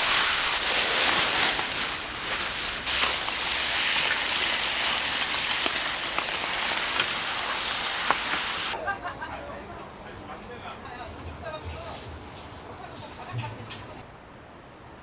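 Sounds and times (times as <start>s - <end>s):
fat popping and crackling: 0.0s - 8.8s
meat sizzling on griddle: 0.0s - 8.8s.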